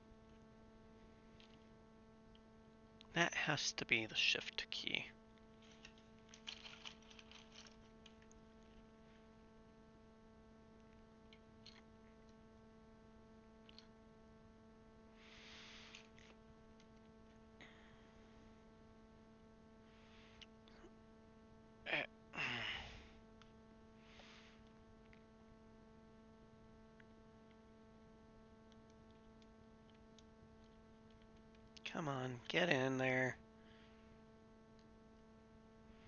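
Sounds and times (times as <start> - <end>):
electrical hum: 0.0 - 36.0
handling noises: 5.2 - 9.3.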